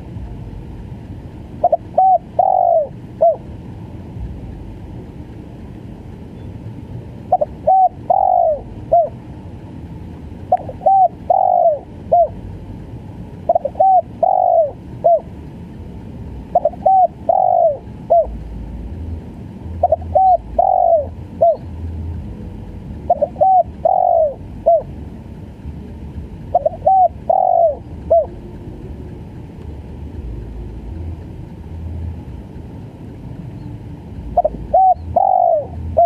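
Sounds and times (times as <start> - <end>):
dove cooing: 1.6 - 3.5, 7.2 - 9.2, 10.5 - 12.4, 13.4 - 15.3, 16.5 - 18.4, 19.8 - 21.7, 23.1 - 25.0, 26.5 - 28.5, 34.4 - 36.0.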